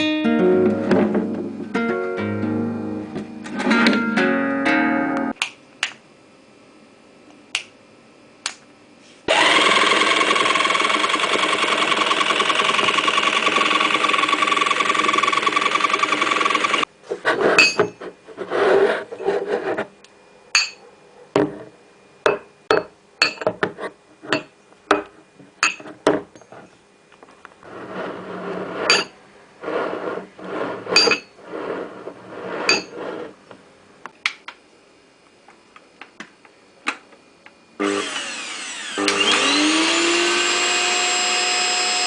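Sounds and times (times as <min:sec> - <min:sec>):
motor whirring with hum: 0:09.3 - 0:16.9, 0:37.5 - 0:42.0.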